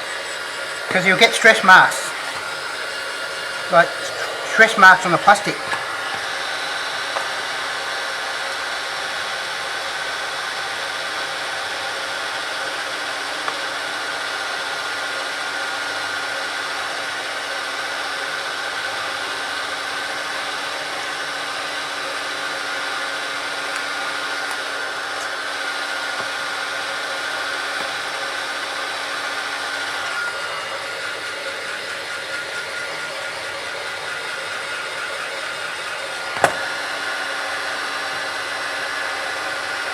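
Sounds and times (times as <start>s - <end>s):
heat gun blowing: 0.0s - 10.6s, 19.8s - 39.9s.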